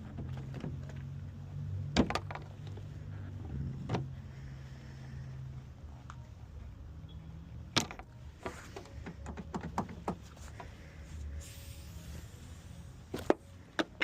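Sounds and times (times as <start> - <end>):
steady low hum: 2.6 - 7.5.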